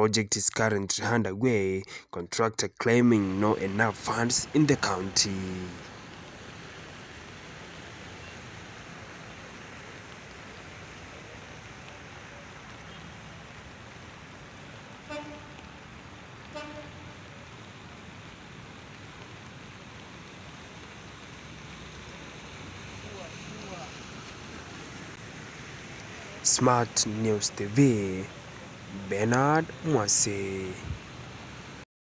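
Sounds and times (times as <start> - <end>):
road traffic: 2.8 - 31.8
car horn toots: 15.0 - 15.7, 16.4 - 17.2.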